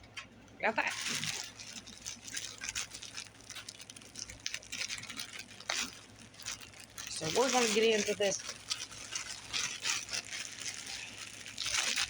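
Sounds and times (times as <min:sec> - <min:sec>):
food packaging rustling: 0:00.6 - 0:12.0.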